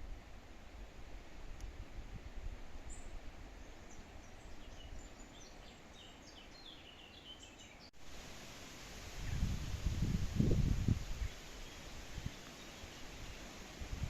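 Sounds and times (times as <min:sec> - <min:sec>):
songbird chirping and trilling: 0:02.9 - 0:08.0, 0:11.2 - 0:13.6.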